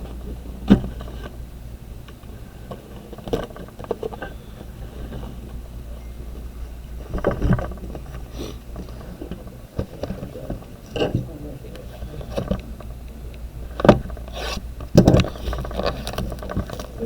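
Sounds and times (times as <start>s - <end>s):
steady low hum: 0.0s - 17.0s
cardboard and wrapper rustling: 13.7s - 17.0s.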